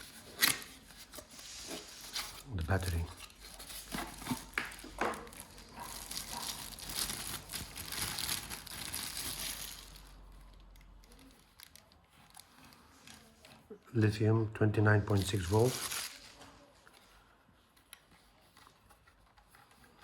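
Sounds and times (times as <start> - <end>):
plastic packaging crinkling: 0.0 - 13.4, 15.1 - 16.5.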